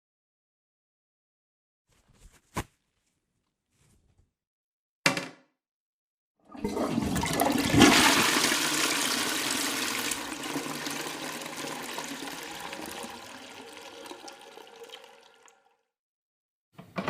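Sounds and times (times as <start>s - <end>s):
toilet flushing: 6.4s - 15.8s.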